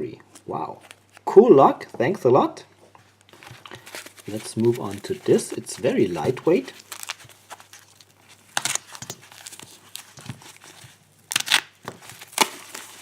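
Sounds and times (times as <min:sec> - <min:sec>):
packaging crinkling and tearing: 0:03.2 - 0:13.0.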